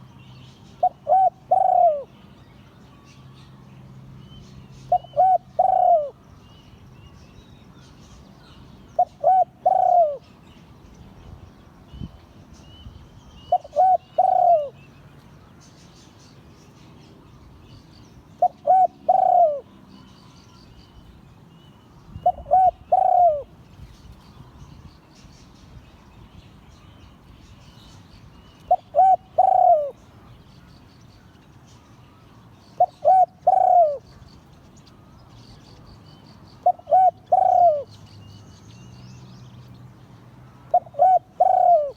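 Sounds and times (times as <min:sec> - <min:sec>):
high chirps of small birds: 0:00.0 - 0:41.9
dove cooing: 0:00.8 - 0:02.2, 0:04.8 - 0:06.2, 0:09.0 - 0:10.2, 0:13.4 - 0:14.8, 0:18.4 - 0:19.7, 0:22.2 - 0:23.5, 0:28.7 - 0:30.0, 0:32.8 - 0:34.0, 0:36.6 - 0:37.9, 0:40.7 - 0:41.9.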